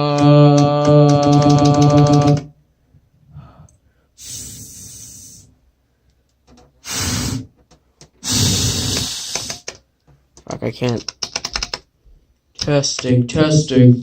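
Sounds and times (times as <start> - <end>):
breaths into microphone: 3.2 - 5.5.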